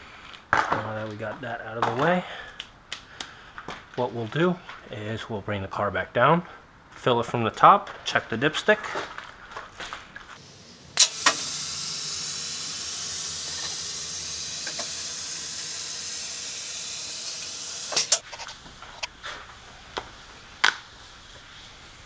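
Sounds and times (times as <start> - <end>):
steady hiss: 10.4 - 18.2.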